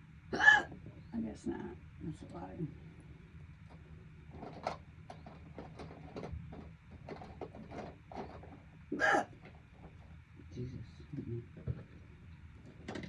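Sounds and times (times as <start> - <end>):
man hiccuping: 0.4 - 0.7, 9.0 - 9.3.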